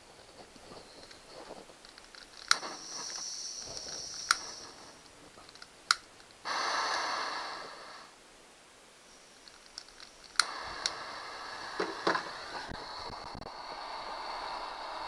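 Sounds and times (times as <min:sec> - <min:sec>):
igniter clicks: 0:01.8 - 0:06.4, 0:09.4 - 0:11.0
gas torch hissing: 0:02.3 - 0:08.2, 0:09.1 - 0:15.0.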